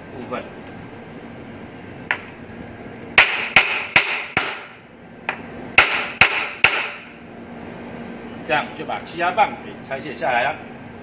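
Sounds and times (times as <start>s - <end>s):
hammer striking metal: 3.2s - 7.1s.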